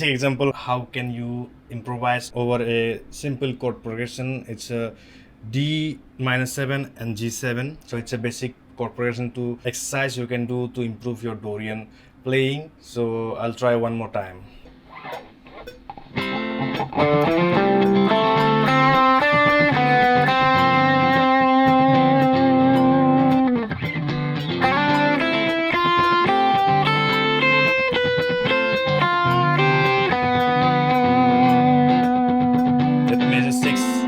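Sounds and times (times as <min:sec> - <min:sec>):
chord backing: 0:14.7 - 0:34.0
overdriven electric guitar lead: 0:14.8 - 0:34.0.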